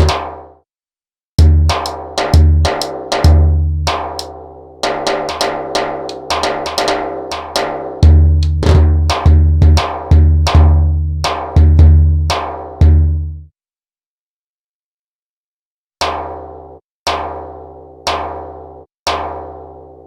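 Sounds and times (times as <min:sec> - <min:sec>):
hand drum rhythm: 0:01.4 - 0:13.2.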